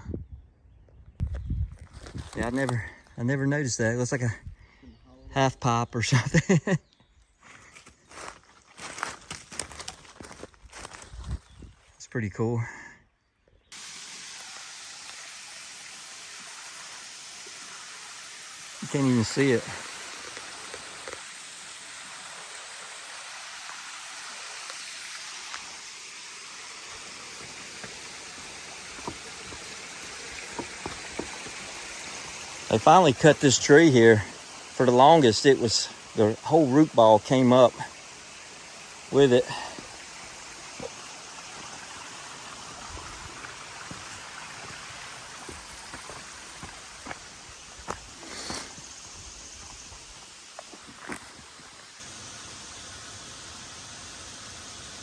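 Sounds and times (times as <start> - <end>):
steady hiss: 13.7 - 55.0.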